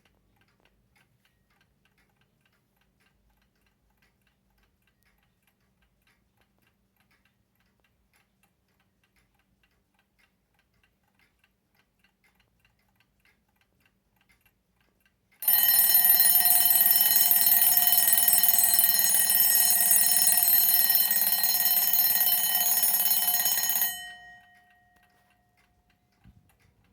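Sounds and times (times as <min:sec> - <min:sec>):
alarm clock bell ringing: 0:15.4 - 0:25.5
alarm clock ticking: 0:15.4 - 0:26.1.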